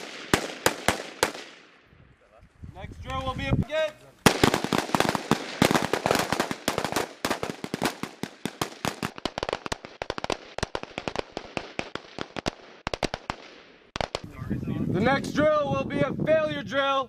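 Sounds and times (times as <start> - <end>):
assault rifles firing: 0.0 - 1.8, 4.2 - 14.3.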